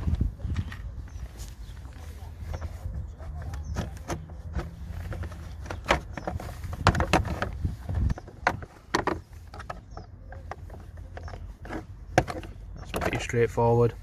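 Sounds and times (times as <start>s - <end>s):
plastic parts clicking and knocking: 3.4s - 13.5s.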